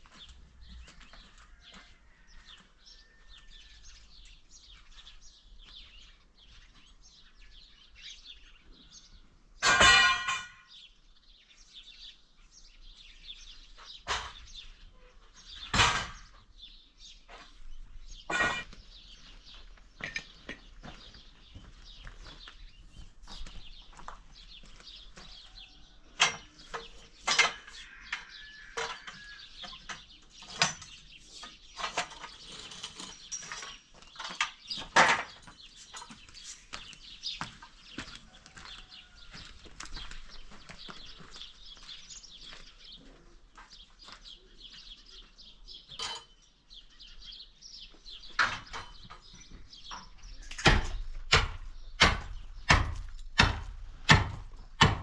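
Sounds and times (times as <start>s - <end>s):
knocks and clinks: 18.3s - 18.8s, 20.0s - 20.7s, 45.9s - 46.4s.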